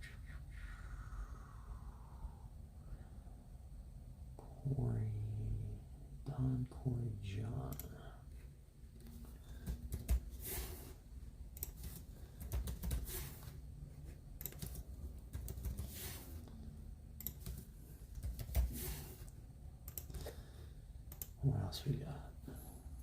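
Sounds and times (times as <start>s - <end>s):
typing on a keyboard: 9.6s - 10.3s, 11.6s - 13.2s, 14.4s - 16.0s, 17.2s - 18.9s.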